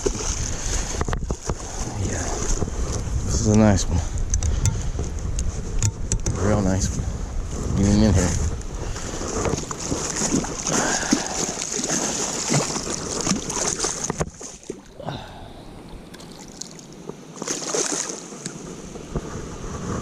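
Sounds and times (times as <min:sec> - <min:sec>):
water splashing and sloshing: 0:00.0 - 0:03.7, 0:07.8 - 0:20.0.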